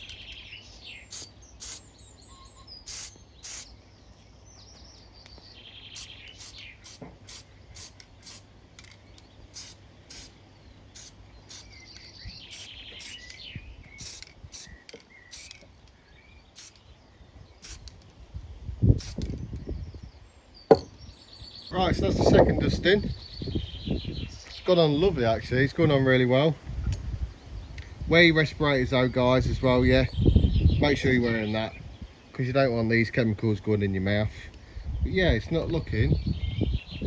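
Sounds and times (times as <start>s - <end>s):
birds singing: 0.0s - 37.0s
bird trilling phrase: 29.9s - 31.9s.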